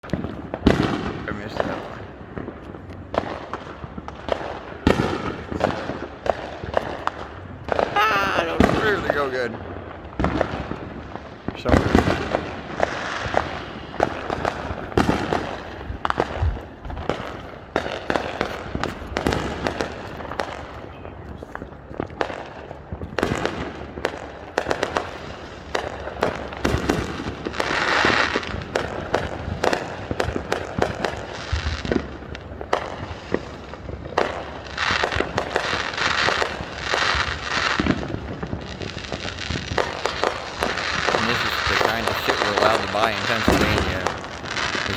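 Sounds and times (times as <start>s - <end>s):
fireworks bangs and pops: 0.0s - 44.9s
fireworks crackling hiss: 7.8s - 9.6s, 31.0s - 44.9s.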